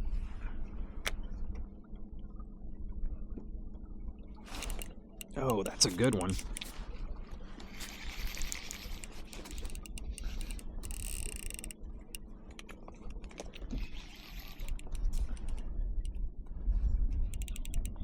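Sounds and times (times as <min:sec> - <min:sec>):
fishing reel clicking and ratcheting: 0:04.5 - 0:06.8, 0:07.6 - 0:16.2, 0:17.2 - 0:18.0.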